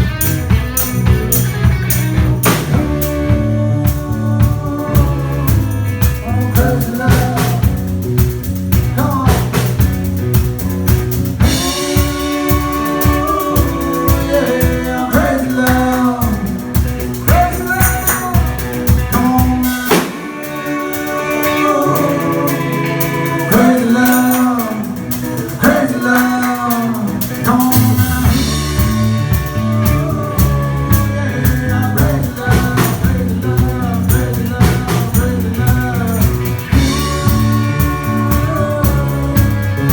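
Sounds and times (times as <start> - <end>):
bass guitar: 0.0 - 39.9
drum kit: 0.0 - 39.9
electric guitar: 0.0 - 39.9
person singing lead vocal: 0.8 - 10.3, 11.3 - 39.9.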